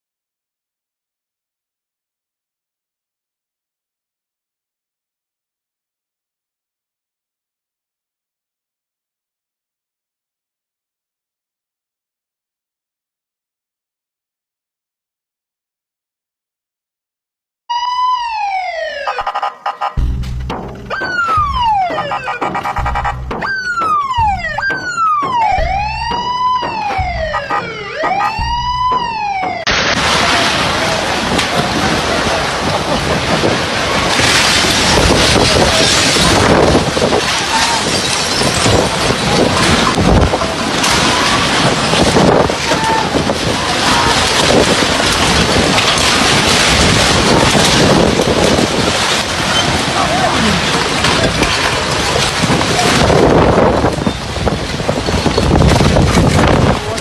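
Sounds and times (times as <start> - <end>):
emergency siren wailing: 17.7 - 20.2, 20.9 - 32.0
low rumble: 20.0 - 29.3
storm wind buffeting microphone: 30.0 - 57.0.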